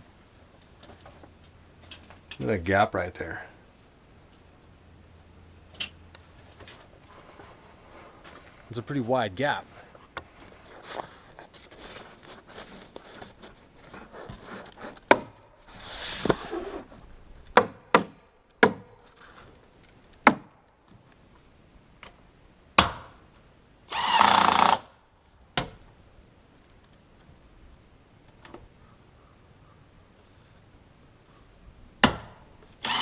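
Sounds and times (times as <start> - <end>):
sharp knocks on wood: 17.6 - 18.9
power tool bursts: 23.9 - 24.9, 32.8 - 33.0.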